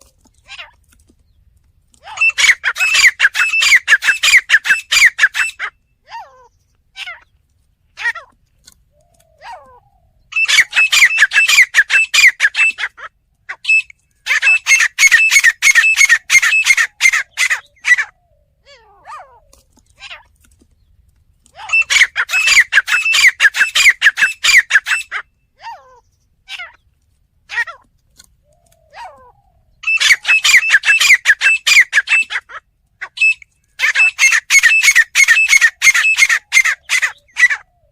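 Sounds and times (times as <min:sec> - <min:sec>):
francolin calling: 0:02.0 - 0:06.0, 0:08.9 - 0:18.6, 0:21.6 - 0:25.4, 0:28.4 - 0:37.9.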